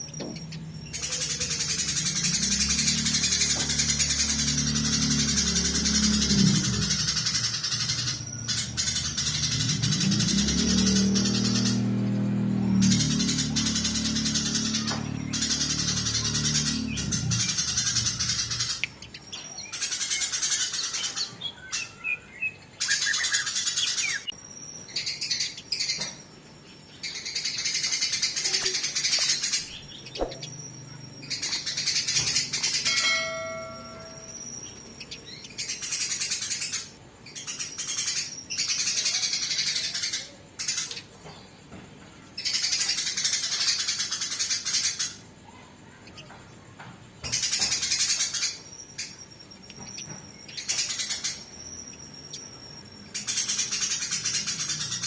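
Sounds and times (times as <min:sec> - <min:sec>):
sparrows chattering: 0:00.0 - 0:55.0
flat-pitched bird note: 0:32.4 - 0:36.0.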